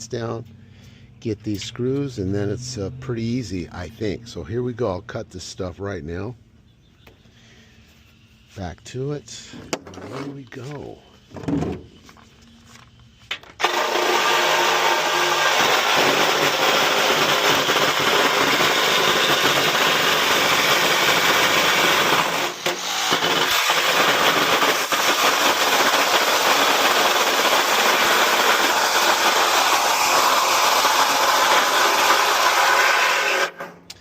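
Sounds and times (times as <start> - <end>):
power saw cutting metal: 13.6 - 33.8.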